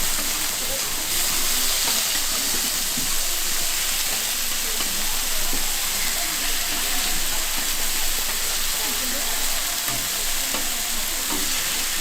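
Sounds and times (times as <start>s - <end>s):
faint voices: 0.0s - 12.0s
steak sizzling: 0.0s - 12.0s.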